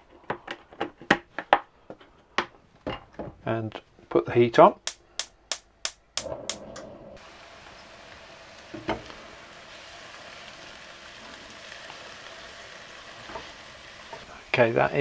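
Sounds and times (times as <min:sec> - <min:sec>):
vegetables sizzling in oil: 0:07.2 - 0:15.0.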